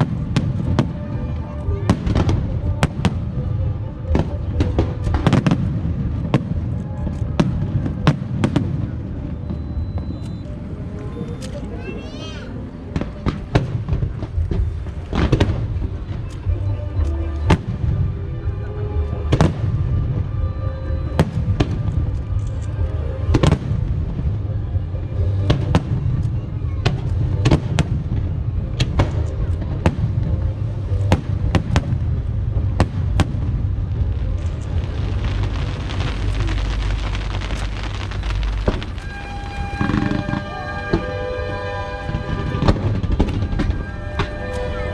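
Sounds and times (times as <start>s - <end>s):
dense steady hiss: 0.0s - 44.9s
fireworks bursting: 0.0s - 44.9s
low rumble: 12.6s - 44.9s
show music: 34.4s - 44.9s.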